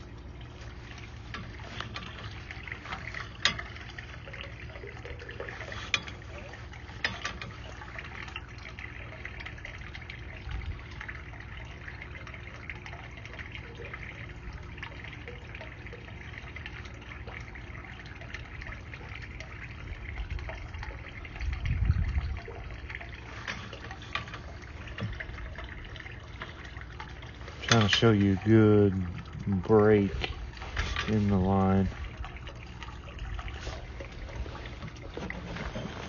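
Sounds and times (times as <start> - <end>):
small crackles: 0.0 - 11.3
water running and trickling: 0.0 - 36.0.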